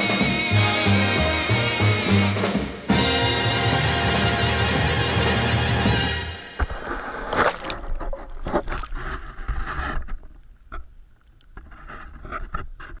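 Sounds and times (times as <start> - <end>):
water splashes: 6.0 - 9.6
water sloshing and lapping: 6.5 - 11.7.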